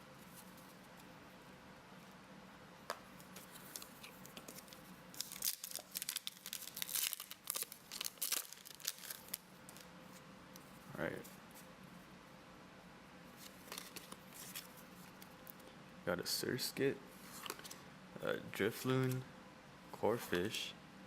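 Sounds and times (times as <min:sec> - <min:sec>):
foil wrapper tearing and crinkling: 0:04.5 - 0:09.8.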